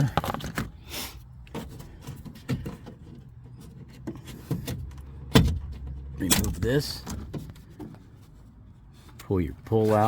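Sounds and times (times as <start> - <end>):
car door parts clicking and knocking: 1.5 - 8.0.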